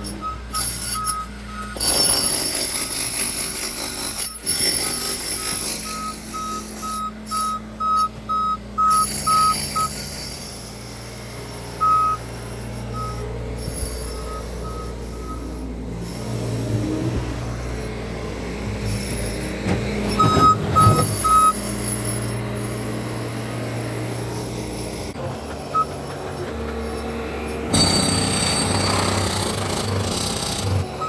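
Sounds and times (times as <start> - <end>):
diesel engine running: 0.0 - 31.0
backup alarm beeping: 0.2 - 1.8, 5.4 - 10.0, 11.8 - 12.2, 12.9 - 13.2, 20.1 - 21.6.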